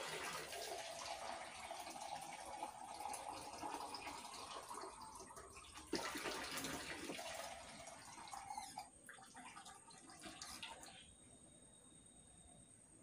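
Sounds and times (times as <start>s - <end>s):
water pouring and splashing: 0.0s - 11.1s.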